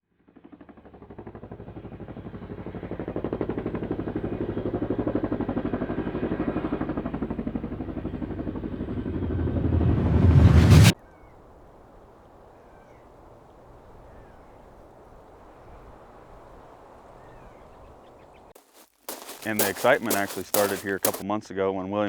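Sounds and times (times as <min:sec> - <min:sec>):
helicopter rotor beat: 0:00.8 - 0:09.8.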